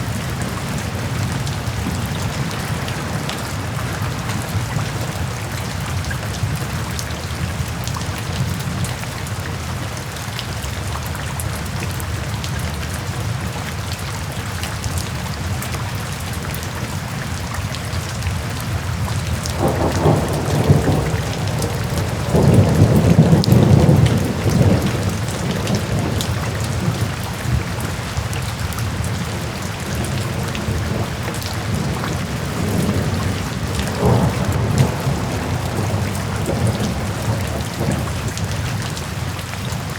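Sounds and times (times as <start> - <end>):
steady rain: 0.0 - 39.9
low thunder rumbles: 19.2 - 39.1
sharp raindrop impacts: 19.3 - 28.0, 28.6 - 39.1.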